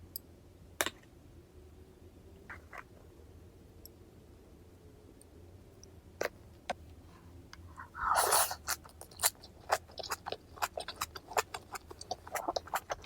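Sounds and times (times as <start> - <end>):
crunchy bite: 7.8 - 13.0
chewing clicks: 8.0 - 13.0.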